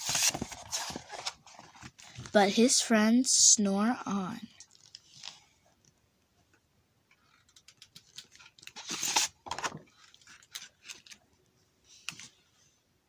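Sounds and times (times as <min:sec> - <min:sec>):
book pages turning: 0:00.0 - 0:02.4, 0:07.4 - 0:11.2.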